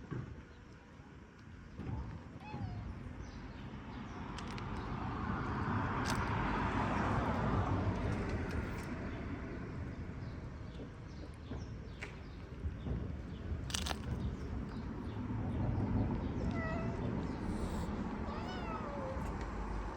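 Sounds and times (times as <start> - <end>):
vehicle passing by: 4.2 - 10.0, 15.1 - 19.9.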